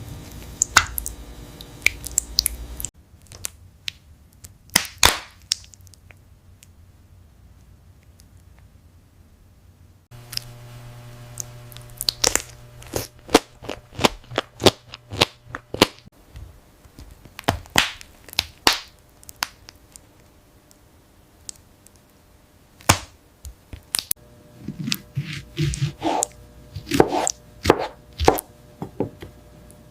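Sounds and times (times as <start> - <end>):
faint steady hum: 0.0 - 29.9
aloe leaf cracking and snapping: 17.2 - 19.8.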